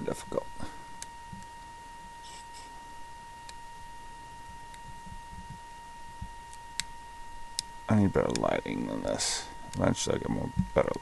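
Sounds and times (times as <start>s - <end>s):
steady high-pitched tone: 0.0s - 11.0s.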